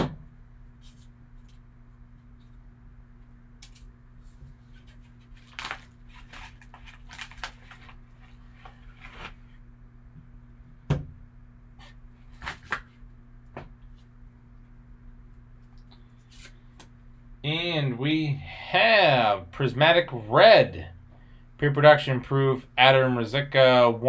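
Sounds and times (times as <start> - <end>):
steady low hum: 0.0 - 24.0
trading cards rustling and sliding: 4.6 - 9.5.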